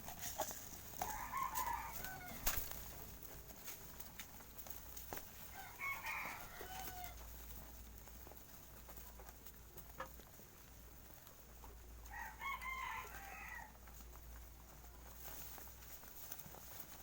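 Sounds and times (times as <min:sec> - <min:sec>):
rooster crowing: 0:01.0 - 0:02.6, 0:05.5 - 0:07.2, 0:12.1 - 0:13.8.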